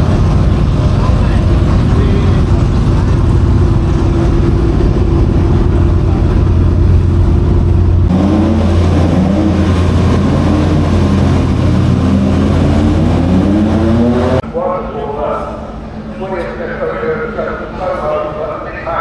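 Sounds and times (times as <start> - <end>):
racing car engines revving: 0.0 - 14.5.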